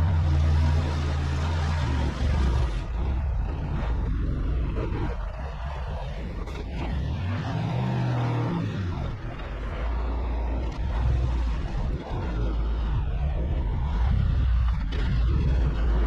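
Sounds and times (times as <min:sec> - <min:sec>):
truck engine rumbling: 0:00.0 - 0:16.0.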